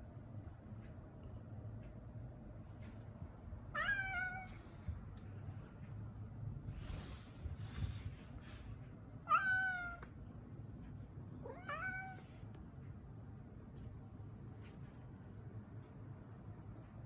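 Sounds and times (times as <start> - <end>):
cat meowing: 3.7 - 4.5, 9.2 - 10.1, 11.4 - 12.3.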